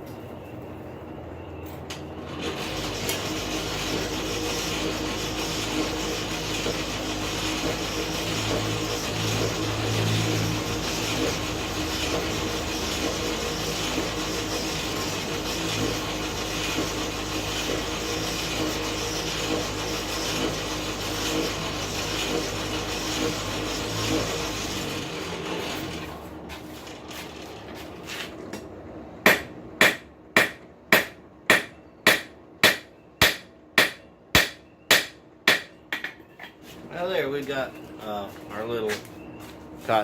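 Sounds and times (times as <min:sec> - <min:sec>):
hammer striking steel on anvil: 0:29.2 - 0:36.2.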